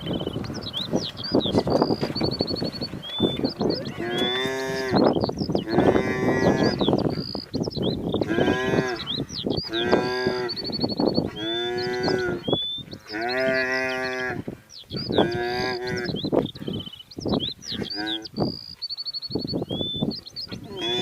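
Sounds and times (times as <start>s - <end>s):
high bird chirps: 0.0s - 21.0s
wildebeest bawling: 3.2s - 6.9s, 8.2s - 14.4s, 20.5s - 21.0s.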